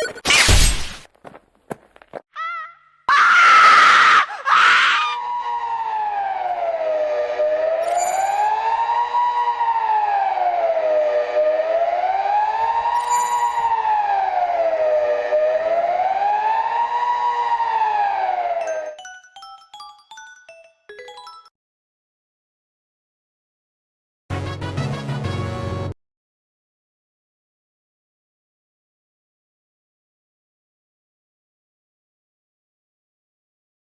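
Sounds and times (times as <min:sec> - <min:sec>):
siren wailing: 0:03.4 - 0:19.0.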